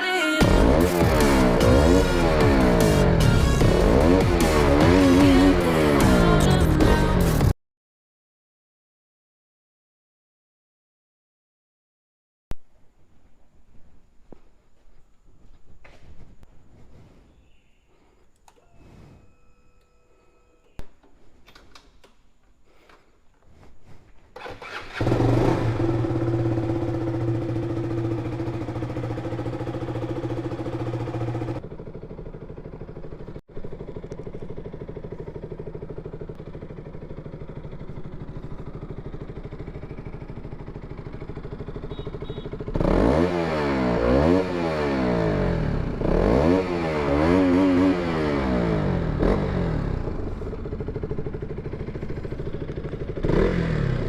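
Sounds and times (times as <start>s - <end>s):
motorcycle engine starting and idling: 0.3s - 7.5s, 13.7s - 54.0s
motorcycle engine revving: 0.4s - 7.5s, 24.3s - 54.0s.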